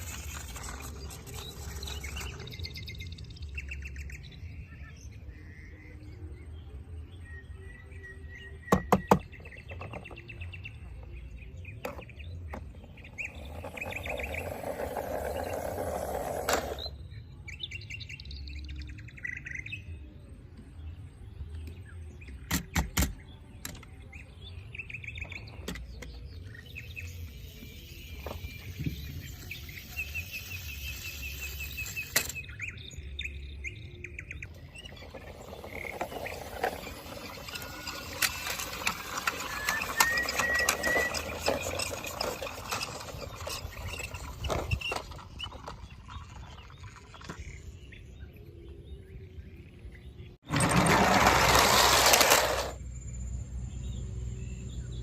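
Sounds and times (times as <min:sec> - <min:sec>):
birds chirping: 0:00.0 - 0:51.7.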